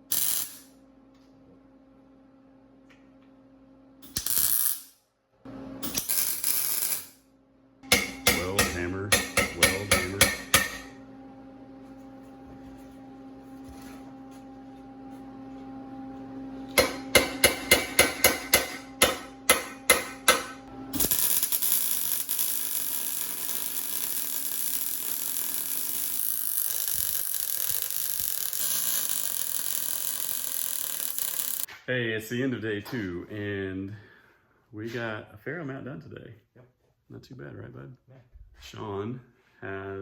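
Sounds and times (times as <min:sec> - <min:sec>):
welding arc hiss and crackle: 0:00.0 - 0:00.7, 0:04.0 - 0:05.0, 0:05.8 - 0:07.2, 0:20.9 - 0:31.7
low electrical hum: 0:00.0 - 0:40.0
hammer ringing on steel tubing: 0:07.8 - 0:10.9.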